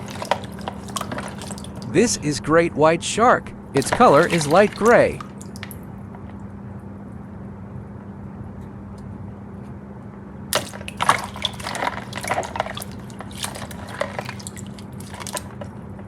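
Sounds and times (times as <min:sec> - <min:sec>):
water splashing and dripping: 0:00.0 - 0:02.2, 0:03.6 - 0:05.9, 0:10.5 - 0:15.7
steady low hum: 0:00.0 - 0:16.0.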